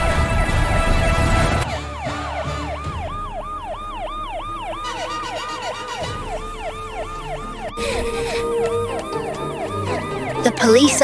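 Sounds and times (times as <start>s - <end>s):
police siren yelping: 0.0s - 11.0s.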